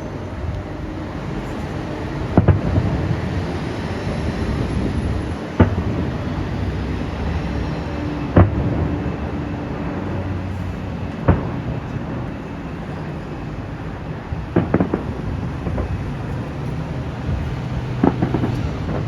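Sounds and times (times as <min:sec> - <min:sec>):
firework shells bursting: 0:14.5 - 0:19.0.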